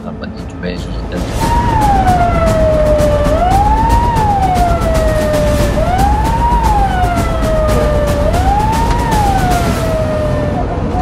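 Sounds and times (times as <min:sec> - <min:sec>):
loud low rumble: 0:00.0 - 0:11.0
boat siren wailing: 0:01.2 - 0:11.0.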